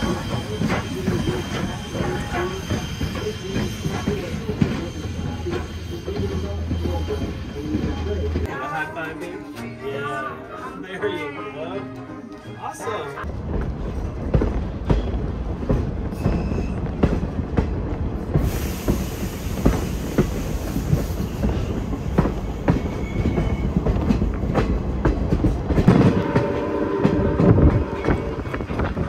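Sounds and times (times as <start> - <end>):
train coaches rumbling: 0.0 - 29.0
high steam hiss: 18.3 - 22.7.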